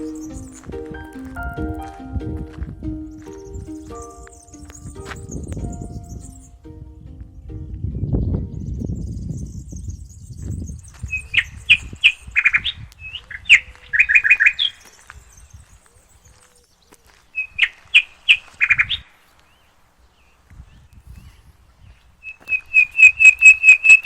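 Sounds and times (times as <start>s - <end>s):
high twittering: 0.0s - 6.6s
songbird singing: 0.0s - 24.0s.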